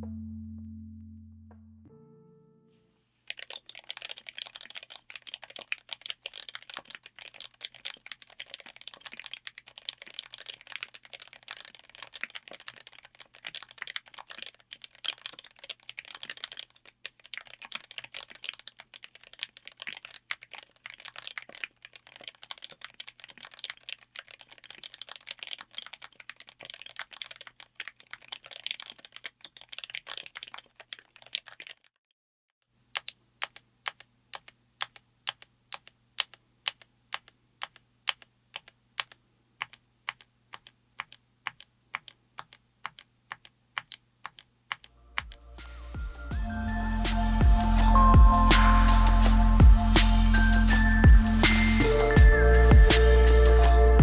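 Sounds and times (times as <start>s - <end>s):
rapid mechanical keyboard typing: 3.3s - 31.9s, 32.9s - 45.4s.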